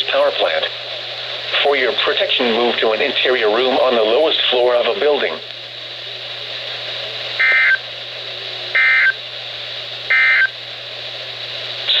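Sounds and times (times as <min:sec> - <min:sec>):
radio hiss: 0:00.0 - 0:12.0
warbling digital data tones: 0:08.8 - 0:09.2.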